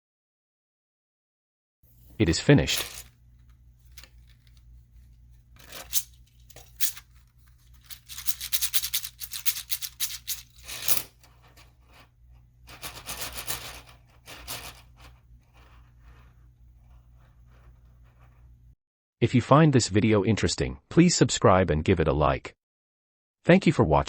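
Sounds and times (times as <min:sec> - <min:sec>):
low steady hum: 0:01.9 - 0:18.8
plastic pieces clicking and rattling: 0:02.6 - 0:03.1, 0:05.6 - 0:11.7, 0:12.7 - 0:15.0.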